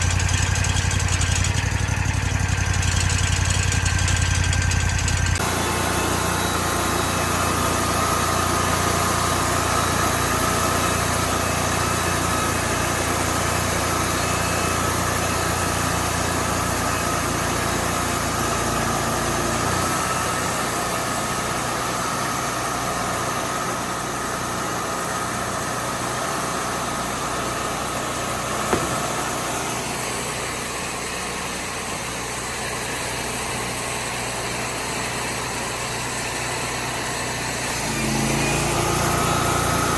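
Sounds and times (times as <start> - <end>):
sawmill engine running: 0.0 - 39.9
single knock: 28.7 - 29.4.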